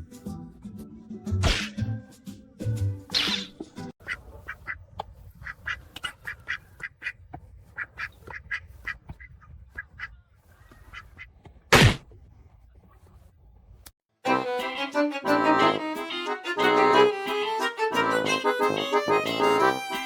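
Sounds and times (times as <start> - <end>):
ducks quacking: 3.1 - 4.8, 5.4 - 11.3, 15.2 - 20.0.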